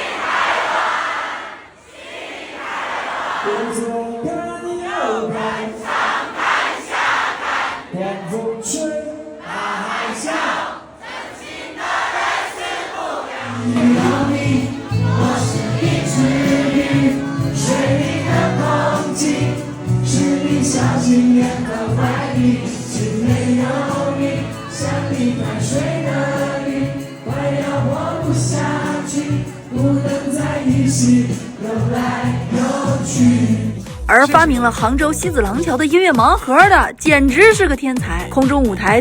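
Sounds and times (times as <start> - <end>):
crowd singing along: 0.0 - 3.8, 4.8 - 34.4
live band playing pop song: 13.6 - 39.0.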